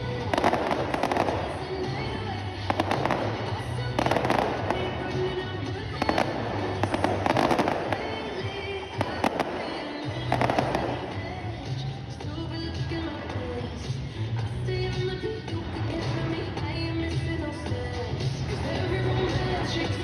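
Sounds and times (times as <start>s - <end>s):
fireworks bangs and crackles: 0.0s - 14.2s
music playing: 0.0s - 20.0s.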